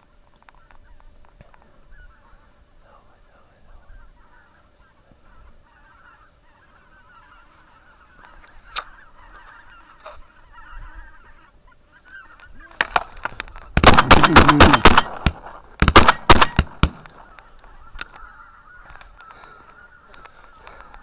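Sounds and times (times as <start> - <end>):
distant geese honking: 0.0 - 21.0.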